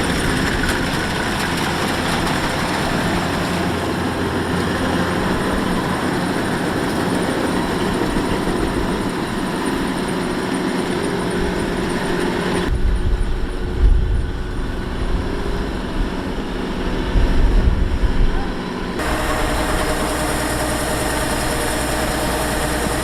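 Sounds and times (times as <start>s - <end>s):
combine harvester engine running: 0.0s - 23.0s.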